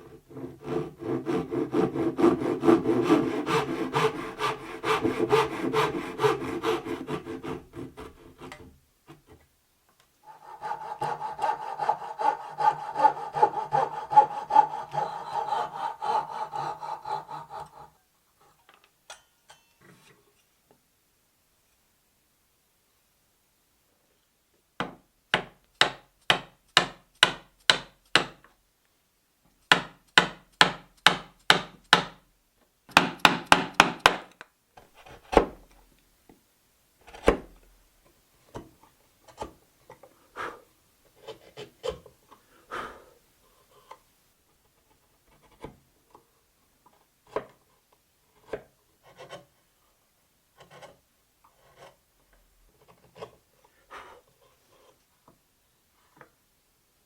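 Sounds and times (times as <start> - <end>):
hand tool strokes on wood: 0.0 - 8.7, 10.2 - 18.0.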